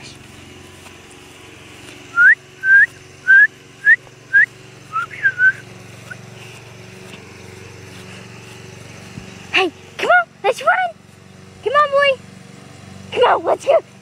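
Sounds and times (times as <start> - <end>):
person whistling: 2.1 - 5.6.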